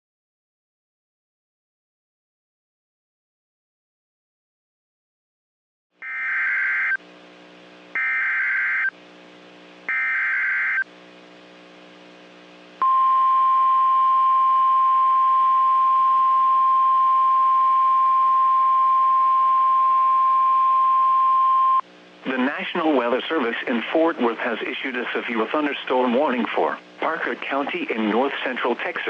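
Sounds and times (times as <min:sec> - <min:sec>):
steady warning alarm tone: 0:06.0 - 0:07.0, 0:08.0 - 0:08.9, 0:09.9 - 0:10.8.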